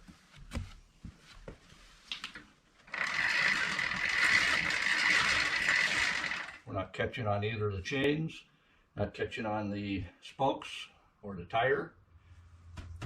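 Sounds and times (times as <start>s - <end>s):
bicycle freewheel ratcheting: 2.9s - 6.6s.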